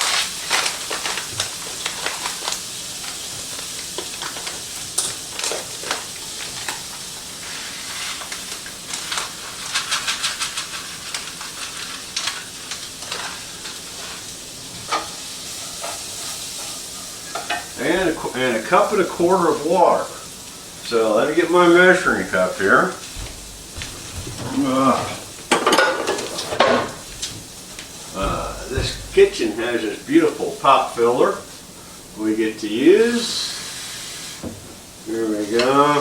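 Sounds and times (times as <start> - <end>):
vegetables sizzling in a pan: 0.0 - 36.0
kitchen clicks and scrapes: 7.4 - 17.8.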